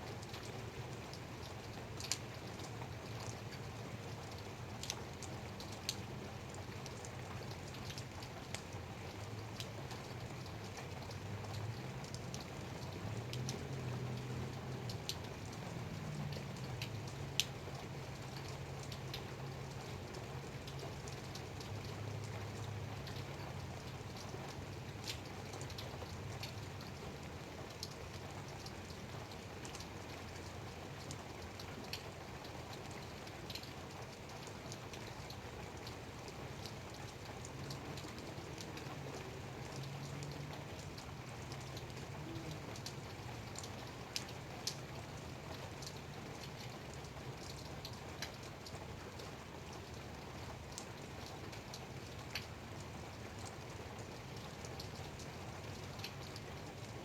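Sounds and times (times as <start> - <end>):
light rain pattering: 0.0 - 57.0
raindrops ticking on a surface: 0.0 - 57.0.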